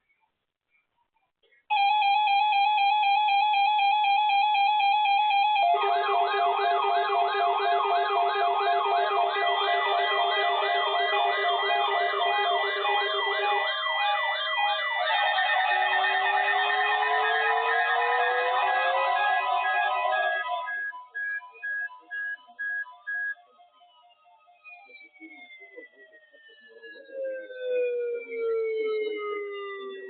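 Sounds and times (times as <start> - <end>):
fast warbling siren wail: 1.7 - 21.4, 24.6 - 30.0
steady electronic alert tones: 5.6 - 21.4.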